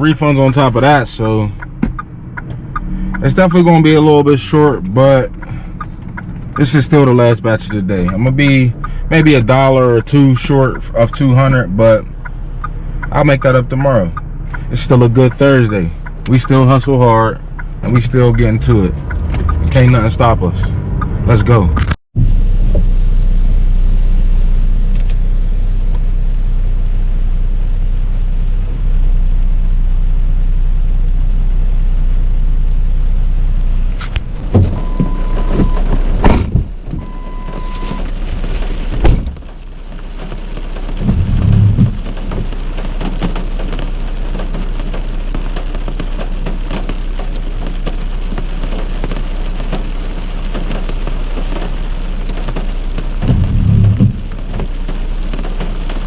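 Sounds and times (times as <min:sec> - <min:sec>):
low rumble: 0:00.0 - 0:45.5, 0:52.0 - 0:56.0
car road noise: 0:00.0 - 0:56.0
heavy rain pouring: 0:33.8 - 0:56.0
short electronic beeps: 0:37.0 - 0:38.1.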